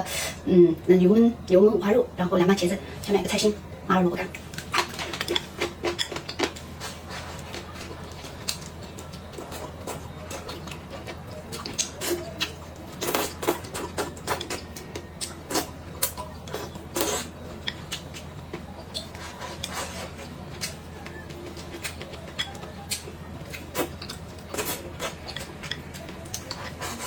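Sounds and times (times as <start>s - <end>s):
chewing and mouth smacks: 4.6s - 27.0s.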